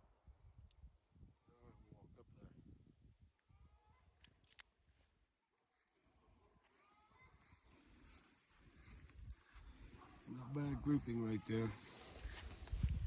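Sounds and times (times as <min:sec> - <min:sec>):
high insect chirps: 0:05.9 - 0:13.0.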